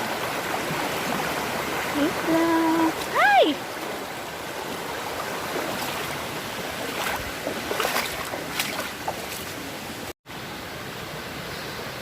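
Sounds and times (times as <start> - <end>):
river water rushing: 0.0 - 12.0
person wading through water: 0.6 - 10.1.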